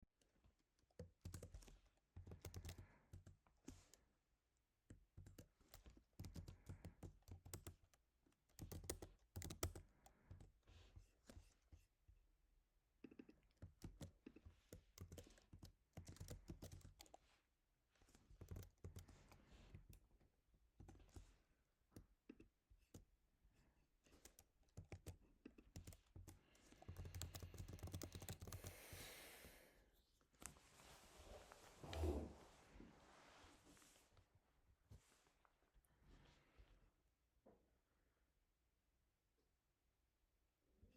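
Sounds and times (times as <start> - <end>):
keyboard typing: 0.8 - 4.1, 4.8 - 11.8, 13.0 - 17.3, 18.1 - 23.1, 24.0 - 28.8.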